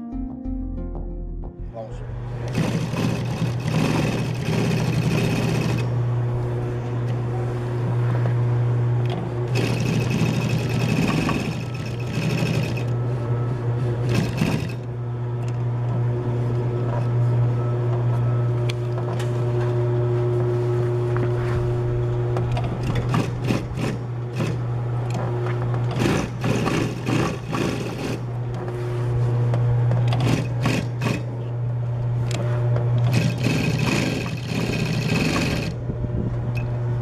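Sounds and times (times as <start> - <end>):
low motor hum: 0.0 - 37.0
sewing machine stitching: 2.5 - 5.9, 9.5 - 13.0, 14.0 - 14.8, 22.8 - 24.6, 25.9 - 28.2, 30.1 - 31.3, 33.0 - 35.8.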